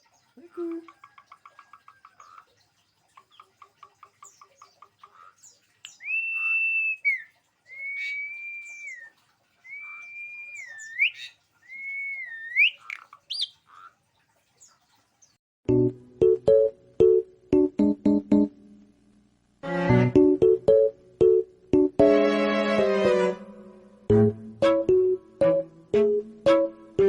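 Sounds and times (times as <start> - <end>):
starling chattering and whistling: 6.0 - 9.1, 9.7 - 13.6.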